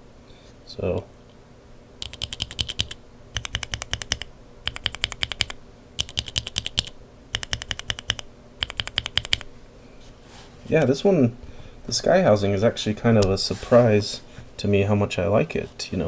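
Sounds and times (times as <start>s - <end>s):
keyboard keys clacking: 2.0s - 9.4s.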